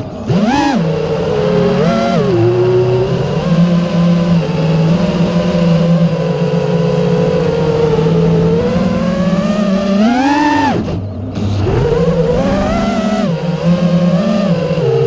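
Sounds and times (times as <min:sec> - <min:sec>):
motor running with pitched tones: 0:00.0 - 0:15.0.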